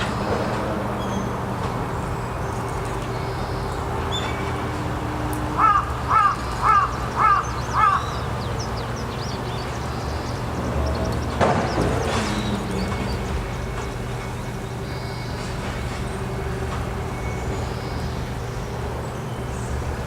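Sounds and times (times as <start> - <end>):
crow cawing: 5.6 - 8.2.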